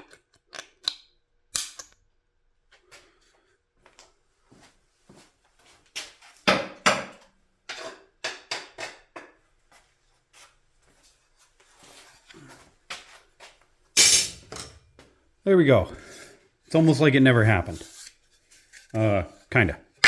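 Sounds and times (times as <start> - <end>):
tools knocking on workbench: 6.5 - 7.2.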